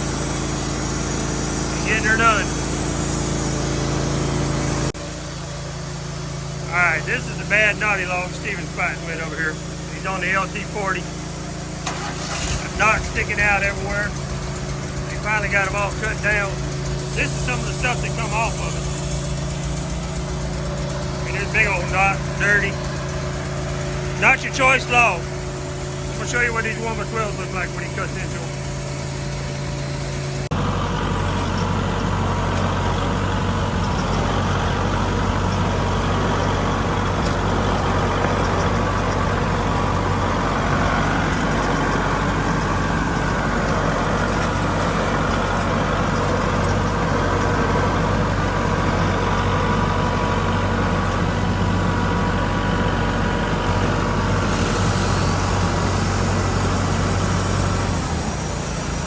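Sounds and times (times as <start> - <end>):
band blade hissing through wood: 0.0 - 5.0, 54.3 - 59.0
sawmill engine running: 0.0 - 59.0.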